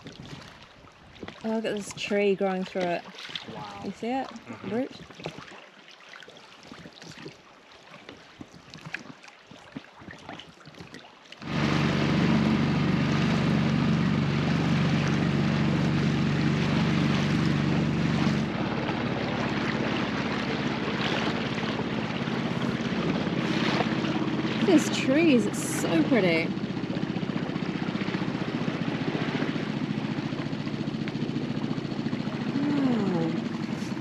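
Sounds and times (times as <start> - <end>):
faint water lapping: 0.0 - 34.0
outboard motor running: 0.0 - 34.0.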